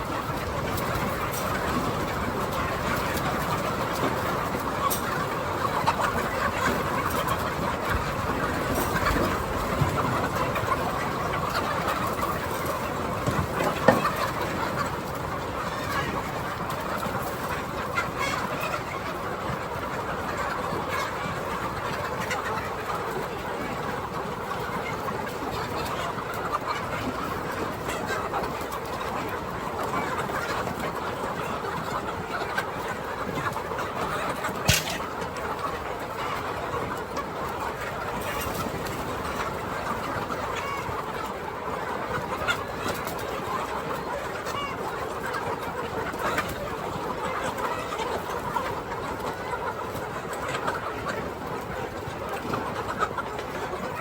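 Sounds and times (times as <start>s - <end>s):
chickens clucking: 0.0s - 54.0s
sharp knock: 34.7s - 35.0s.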